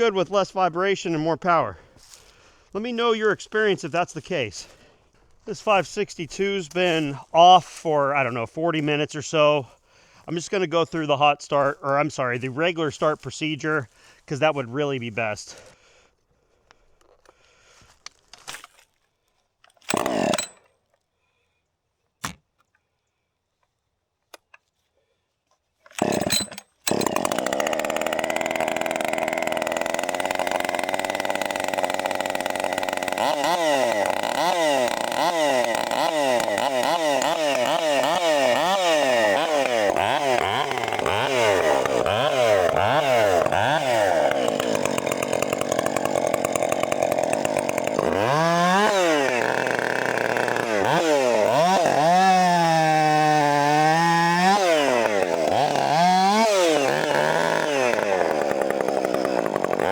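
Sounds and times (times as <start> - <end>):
starter cord pull: 19.7 - 20.6, 25.9 - 27.3
chainsaw running: 19.8 - 20.7, 25.9 - 59.9
chainsaw engine revving: 19.9 - 20.6, 26.0 - 59.9.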